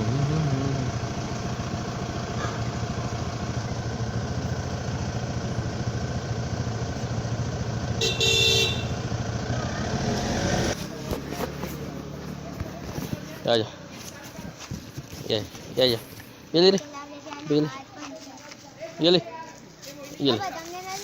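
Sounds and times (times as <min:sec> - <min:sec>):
vehicle engine running: 0:00.0 - 0:16.6
horn honk: 0:07.9 - 0:10.8.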